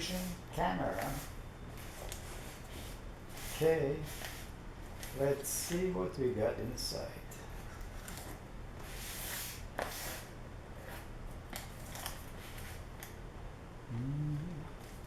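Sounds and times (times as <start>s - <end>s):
cardboard rustling and scraping: 0.0s - 5.4s
person humming: 13.9s - 14.8s.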